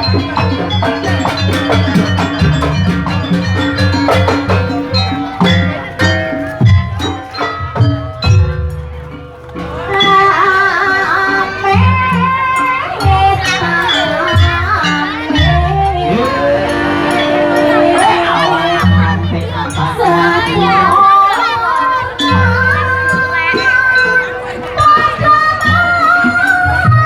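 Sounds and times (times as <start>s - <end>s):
drums and metal percussion: 0.0s - 27.0s
wavering melody line: 0.0s - 27.0s.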